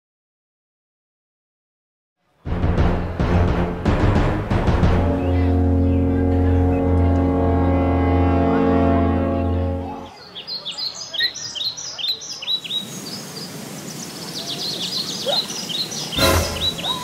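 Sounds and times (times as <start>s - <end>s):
steady droning tone: 5.0s - 10.1s
small birds chirping: 10.0s - 17.0s.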